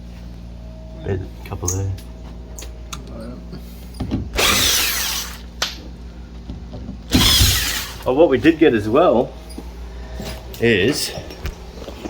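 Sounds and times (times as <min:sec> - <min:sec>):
screw gun driving screws: 0:04.4 - 0:05.5, 0:07.1 - 0:08.1.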